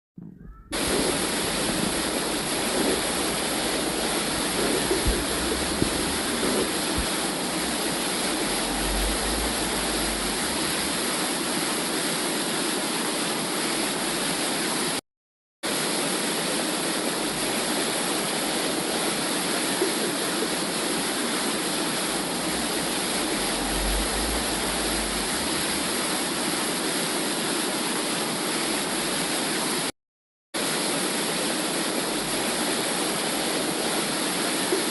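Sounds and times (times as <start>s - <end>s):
whooshing womb-sound noise: 0.2s - 12.0s, 19.8s - 26.9s.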